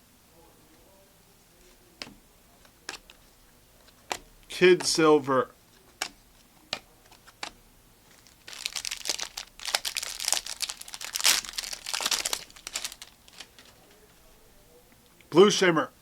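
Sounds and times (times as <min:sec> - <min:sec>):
light clicks and taps: 0:05.7 - 0:07.6
wrapper tearing and crinkling: 0:08.1 - 0:13.8.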